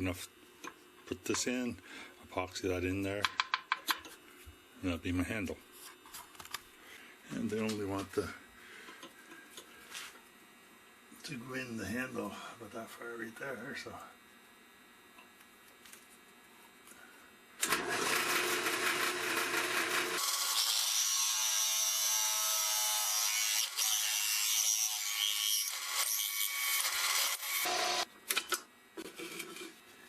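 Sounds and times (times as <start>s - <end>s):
drill press drilling: 17.6s - 20.4s, 27.6s - 28.0s.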